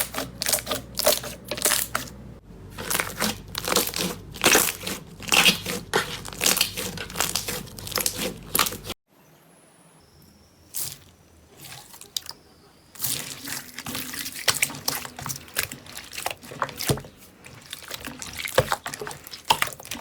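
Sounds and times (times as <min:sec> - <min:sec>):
slime crackling and popping: 0:02.7 - 0:08.8.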